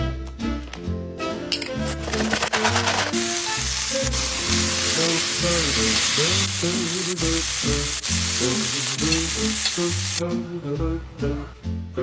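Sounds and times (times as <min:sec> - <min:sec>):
background music: 0:00.0 - 0:12.0
steak sizzling with pops: 0:03.1 - 0:10.2.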